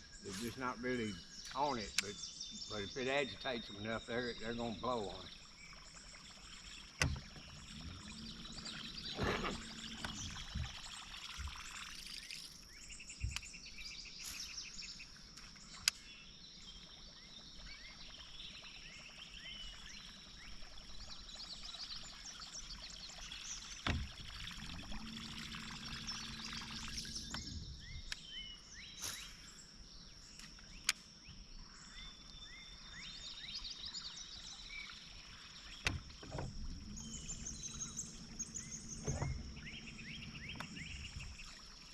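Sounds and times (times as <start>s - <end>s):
birds chirping: 0.0s - 41.9s
low hum: 1.3s - 12.2s, 23.3s - 28.4s, 35.8s - 41.9s.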